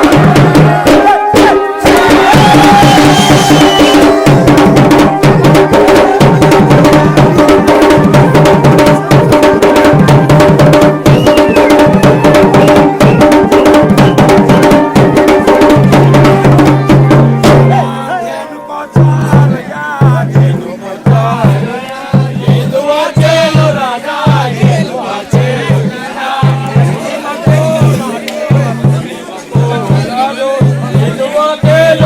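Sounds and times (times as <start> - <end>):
low drum pulse: 0.0 - 18.0
drums playing fast rhythm: 0.0 - 32.0.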